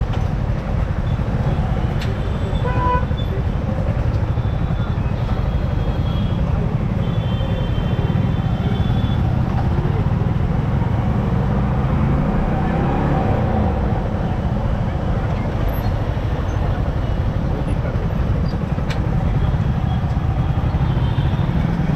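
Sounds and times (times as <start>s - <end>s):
motorcycle engine rumble: 0.1s - 21.9s
vehicle horn honking: 2.5s - 3.2s.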